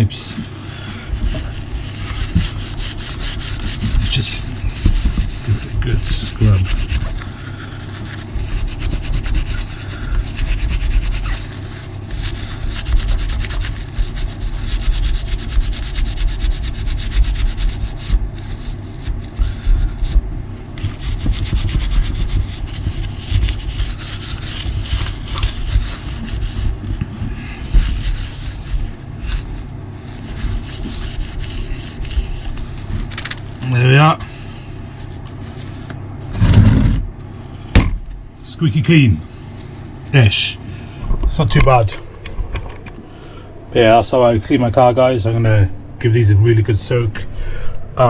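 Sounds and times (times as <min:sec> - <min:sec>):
wipes scrubbing a toy car: 0:00.0 - 0:36.7.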